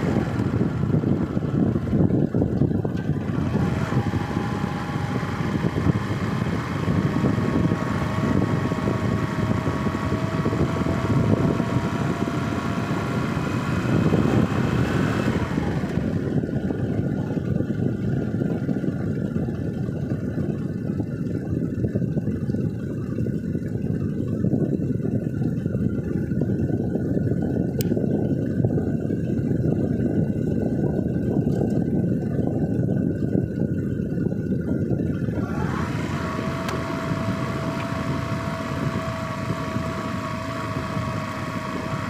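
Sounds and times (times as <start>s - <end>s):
vehicle engine rumble: 0.0s - 42.0s.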